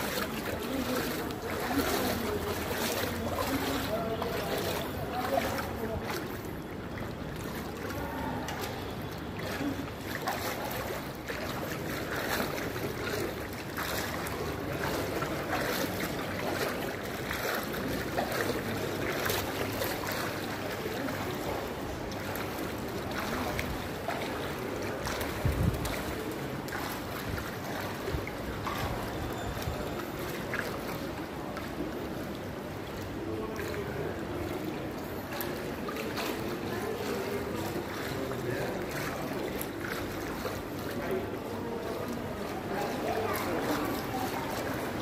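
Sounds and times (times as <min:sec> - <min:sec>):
rushing water: 0:00.0 - 0:45.0
wind on microphone: 0:25.4 - 0:26.2.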